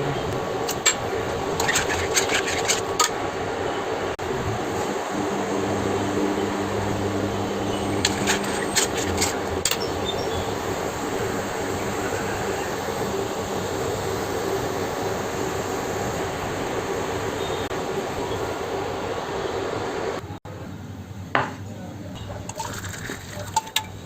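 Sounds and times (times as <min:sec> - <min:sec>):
low hum: 0:00.0 - 0:12.2
steady rushing hiss: 0:00.0 - 0:20.4.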